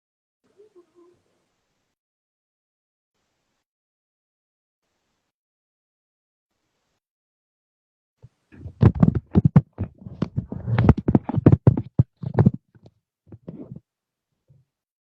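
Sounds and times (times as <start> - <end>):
rapid knocks and taps: 8.6 - 13.8.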